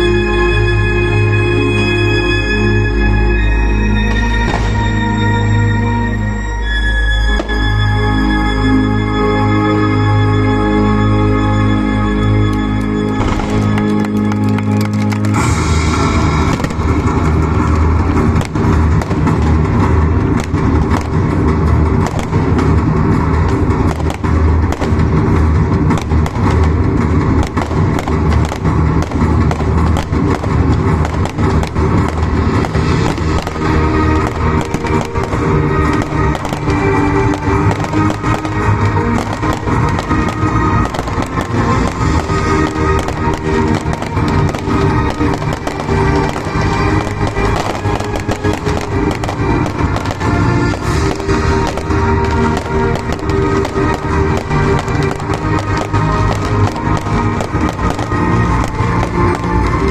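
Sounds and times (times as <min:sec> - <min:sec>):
music with held notes: 0:00.0 - 0:59.9
fireworks bangs and cracks: 0:03.3 - 0:08.2, 0:11.5 - 0:59.9
low rumble of explosions: 0:04.0 - 0:08.1, 0:12.1 - 0:59.9.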